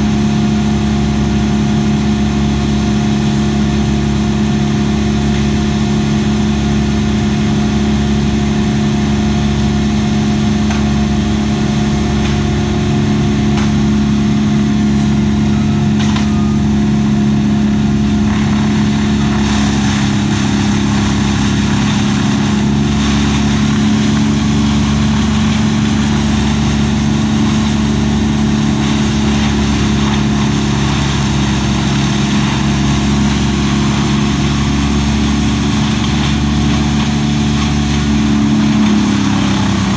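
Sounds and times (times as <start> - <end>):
engine running steadily: 0.0 - 39.9.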